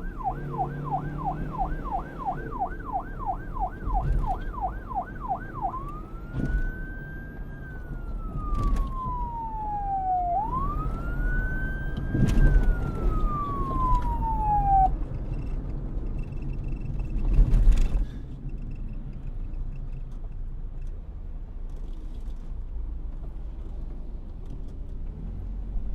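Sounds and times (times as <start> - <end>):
police siren wailing: 0.0 - 15.2
low traffic noise: 0.0 - 25.9.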